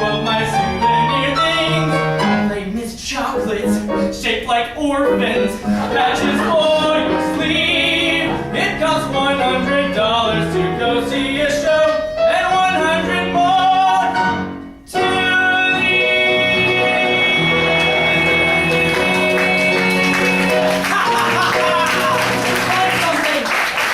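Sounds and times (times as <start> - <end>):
person singing with vibrato: 0.0 - 23.1
instrumental accompaniment: 5.0 - 23.2.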